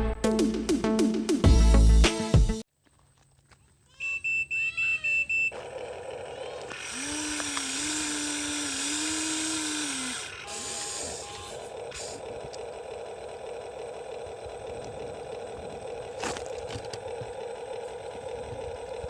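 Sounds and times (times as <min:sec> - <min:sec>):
high beep: 0:04.0 - 0:05.5
electric motors humming: 0:04.6 - 0:19.0
hiss: 0:10.4 - 0:12.2.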